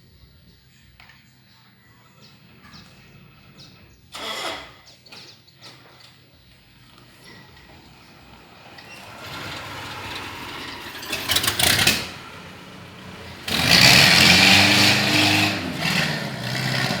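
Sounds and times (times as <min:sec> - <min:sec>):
car engine idling: 0:06.4 - 0:17.0.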